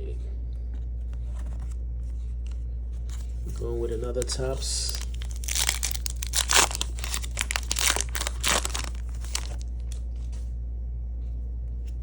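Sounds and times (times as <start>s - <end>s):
steady low hum: 0.0s - 12.0s
plastic wrapper tearing and crinkling: 4.1s - 10.0s.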